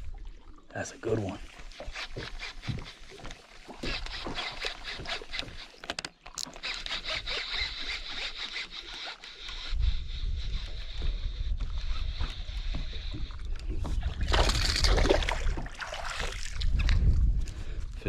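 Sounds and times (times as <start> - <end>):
fishing reel whirring: 1.5 - 13.7
fishing reel ratcheting clicks: 3.8 - 9.8
wind rumble on microphone: 9.6 - 18.0.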